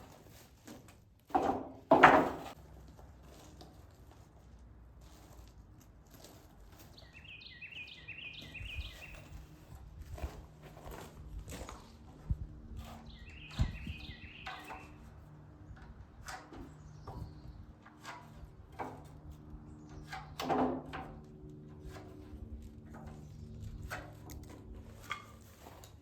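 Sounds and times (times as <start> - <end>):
wooden boards knocking: 1.4 - 2.5
bird chirping: 7.0 - 9.4, 12.8 - 15.0.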